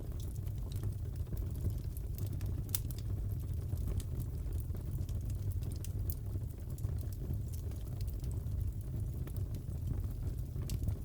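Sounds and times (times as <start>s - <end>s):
fire rumbling: 0.0s - 11.0s.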